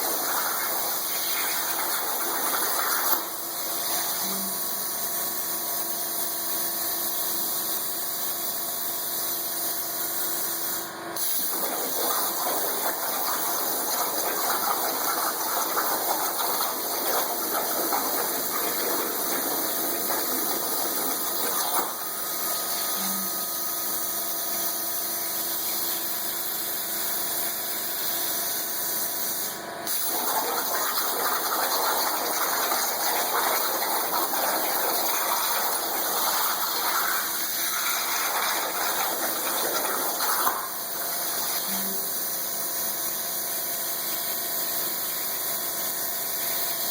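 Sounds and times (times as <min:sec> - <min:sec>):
underwater plasma torch hissing: 0:11.3 - 0:22.2, 0:29.9 - 0:41.8.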